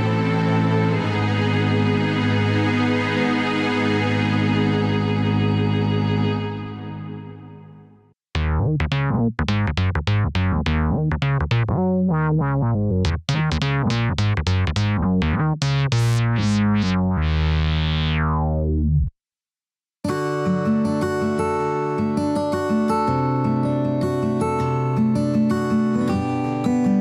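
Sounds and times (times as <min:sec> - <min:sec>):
synth bass line: 0:08.4 - 0:19.1
synthesizer playing short notes: 0:13.2 - 0:19.1.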